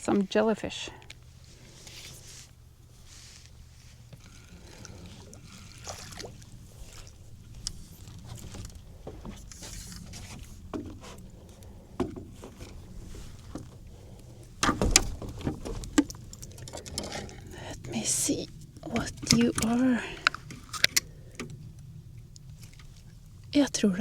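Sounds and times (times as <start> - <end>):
water sloshing: 0.0 - 24.0
small knocks and clicks: 4.1 - 17.9.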